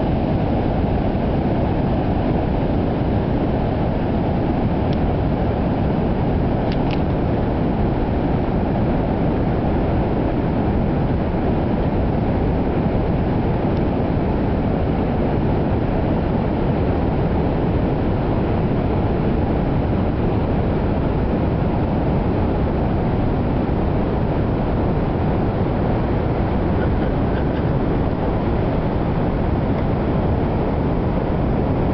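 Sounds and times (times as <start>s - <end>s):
roar of heavy surf: 0.0s - 31.9s.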